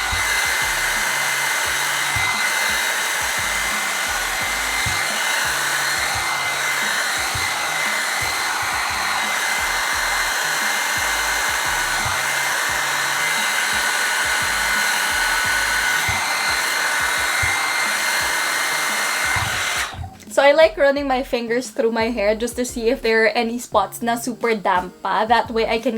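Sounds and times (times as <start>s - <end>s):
hair dryer brush running: 0.0s - 20.2s.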